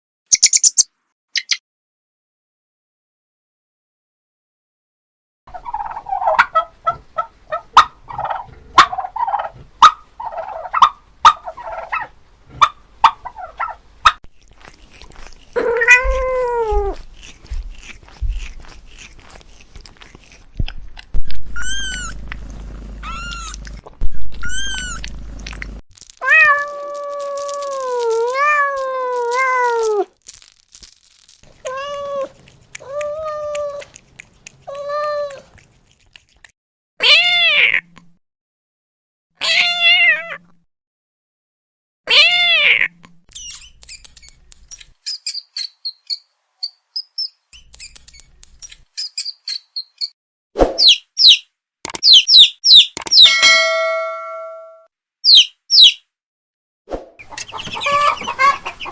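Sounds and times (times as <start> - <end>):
cats meowing: 15.5 - 17.1, 21.5 - 22.2, 23.0 - 23.7, 24.3 - 25.0, 26.2 - 30.1, 31.5 - 34.0, 34.6 - 35.6, 37.0 - 37.9, 39.4 - 40.4, 42.1 - 43.0
sharp clicks: 51.9 - 53.3.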